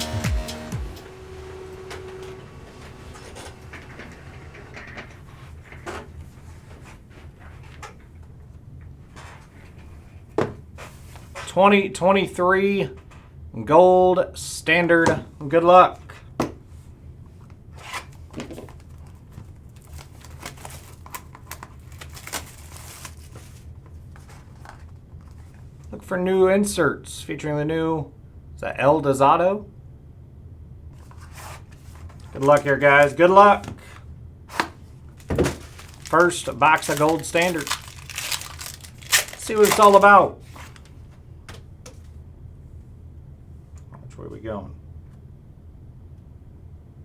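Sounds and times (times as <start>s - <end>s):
electronic music sting: 0.0s - 3.2s
card box handling clicks and rustles: 17.9s - 25.6s, 31.0s - 42.1s.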